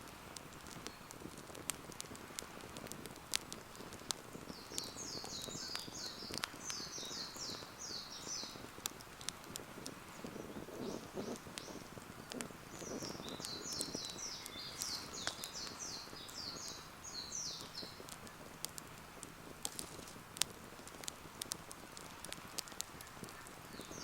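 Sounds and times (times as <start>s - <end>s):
campfire crackling and popping: 0.0s - 24.0s
bird chirping: 4.3s - 8.7s, 12.7s - 18.4s, 22.9s - 24.0s.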